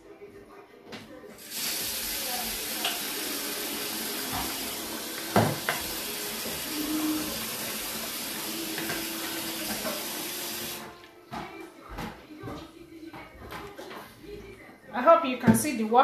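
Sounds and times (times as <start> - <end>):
tap water running into pot: 1.4 - 10.9.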